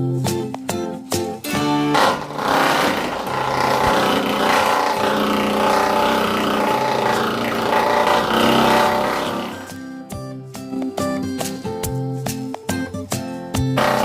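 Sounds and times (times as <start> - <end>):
machine running: 1.9 - 9.8, 13.8 - 14.0.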